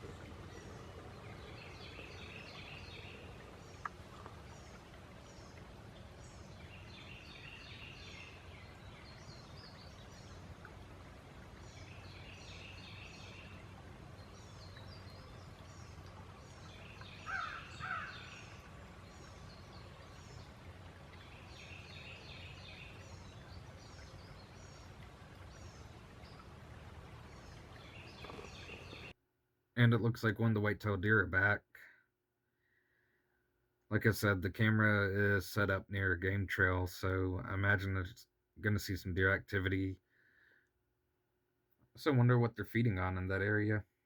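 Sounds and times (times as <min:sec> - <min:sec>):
lower bird calls: 0:00.0 - 0:10.8, 0:11.6 - 0:26.5, 0:27.2 - 0:29.1.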